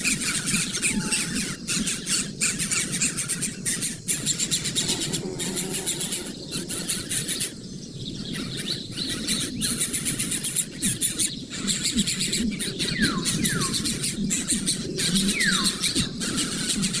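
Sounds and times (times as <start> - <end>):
birds chirping: 0.0 - 17.0
steady low hum: 3.6 - 9.0.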